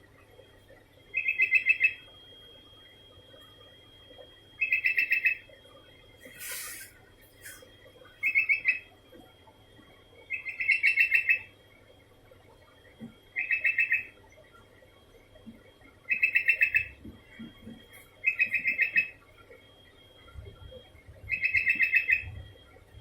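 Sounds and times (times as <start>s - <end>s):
brief hiss: 6.3s - 7.6s.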